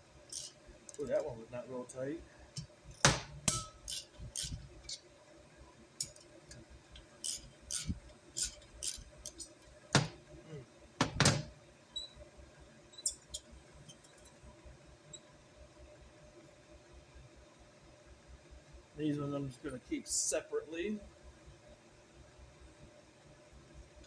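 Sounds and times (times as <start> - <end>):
metal clicks of wrench and screws: 2.6 - 5.0, 6.0 - 6.3, 6.9 - 9.5
knocks on bench: 3.0 - 3.3, 9.9 - 10.2, 11.0 - 11.5.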